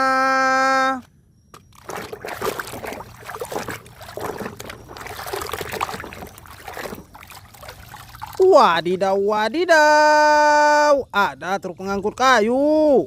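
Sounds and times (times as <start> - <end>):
water splashing and sloshing: 1.5 - 8.9.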